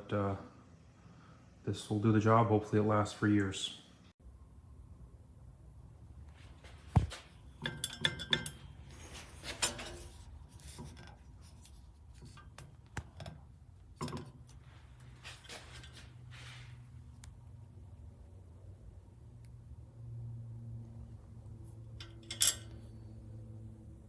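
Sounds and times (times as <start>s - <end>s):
low steady hum: 3.7s - 24.0s
metallic clinks and knocks: 6.9s - 8.8s, 9.5s - 14.6s, 21.9s - 23.0s.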